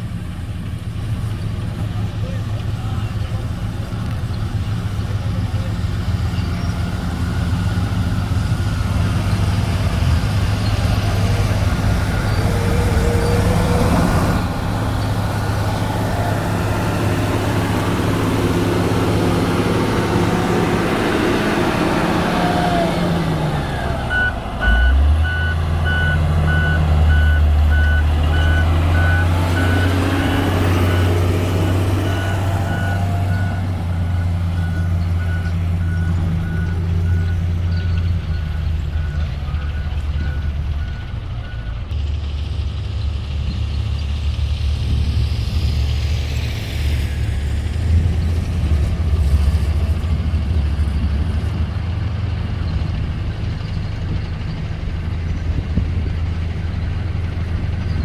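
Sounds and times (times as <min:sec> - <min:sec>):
diesel engine running: 0:00.0 - 0:58.0
reversing alarm beeping: 0:23.5 - 0:41.8.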